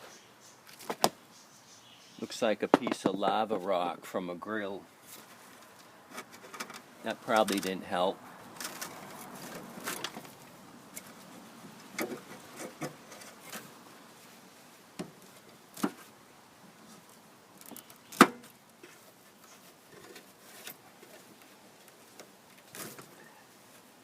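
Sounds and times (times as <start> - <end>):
tools knocking and scraping: 2.7 - 3.2.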